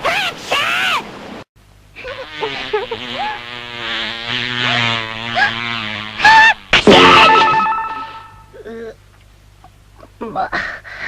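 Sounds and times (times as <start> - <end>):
steady held tone: 6.9 - 8.6.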